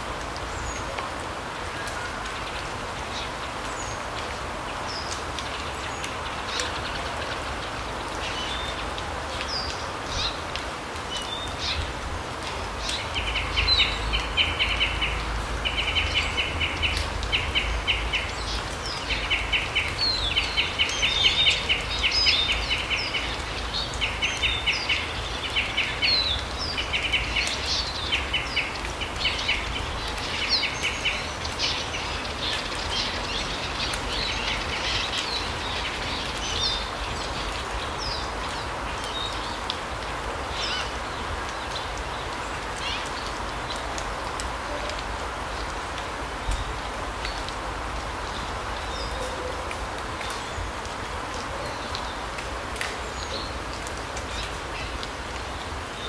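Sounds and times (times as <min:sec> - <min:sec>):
songbirds calling: 0:12.7 - 0:43.8.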